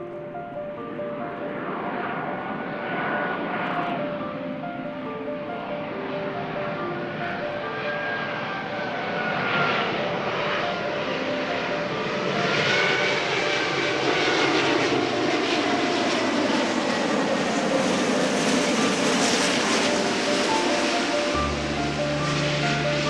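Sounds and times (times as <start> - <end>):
jet engines rushing: 0.0 - 23.0
high engine whines: 14.9 - 23.0.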